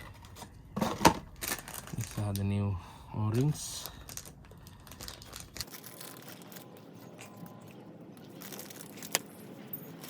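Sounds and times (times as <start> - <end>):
small parts crinkling and clicking: 1.2 - 2.6, 3.3 - 10.0.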